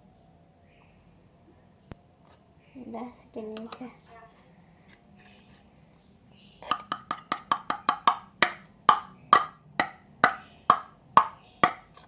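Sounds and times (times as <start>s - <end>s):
hollow taps on hard object: 6.6s - 12.0s.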